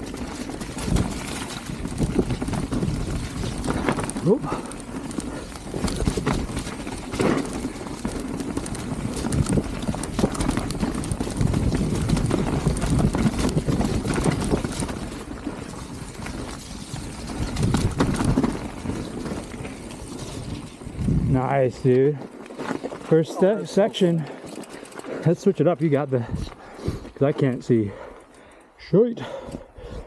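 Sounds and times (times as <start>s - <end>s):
bike knocking and clattering: 0.0s - 21.0s
tyres rolling on wet dirt: 0.0s - 28.6s.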